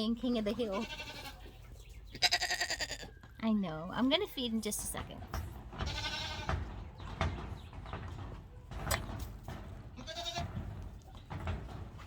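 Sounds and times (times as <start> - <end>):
baby goats bleating: 0.6 - 1.5, 2.1 - 3.2, 5.8 - 6.6, 10.0 - 10.5
light knocks from goats jostling: 4.4 - 12.0.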